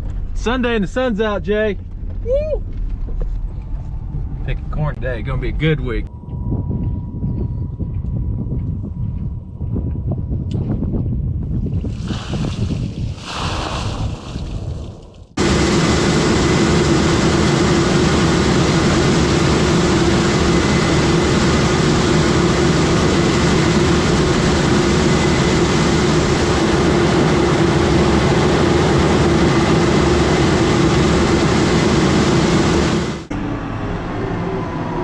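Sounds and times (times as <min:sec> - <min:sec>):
combine harvester running: 0:15.4 - 0:35.0.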